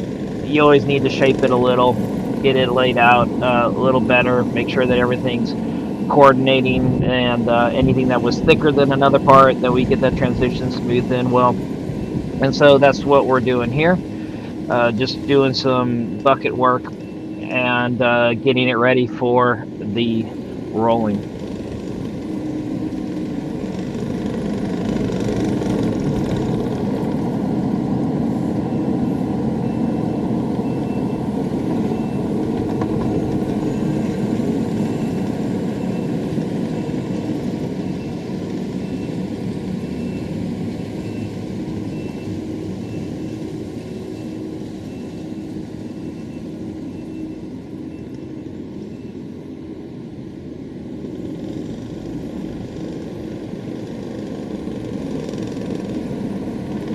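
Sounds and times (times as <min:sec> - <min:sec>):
digger engine running: 0:00.0 - 0:49.5
reversing alarm beeping: 0:00.5 - 0:21.2, 0:28.4 - 0:49.9.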